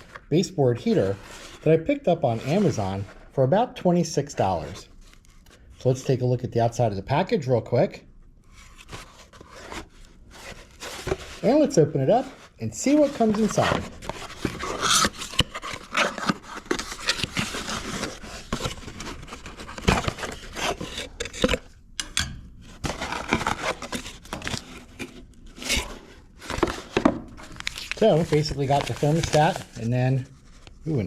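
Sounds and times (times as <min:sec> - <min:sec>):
cardboard packaging rustling: 0:08.5 - 0:21.8, 0:22.6 - 0:30.8.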